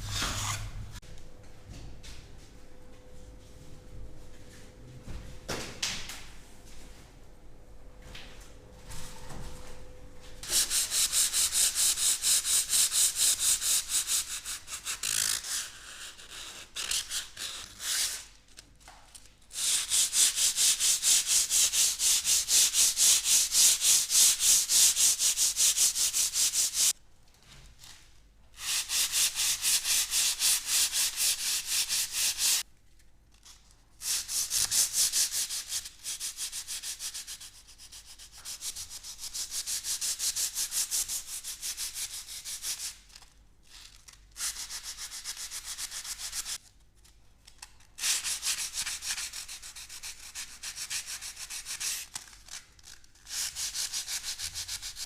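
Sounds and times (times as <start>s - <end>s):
hand sanding plaster: 10.4s - 18.2s, 19.6s - 27.0s, 28.6s - 32.6s, 34.0s - 43.0s, 44.4s - 46.6s, 48.0s - 52.2s, 53.3s - 55.0s.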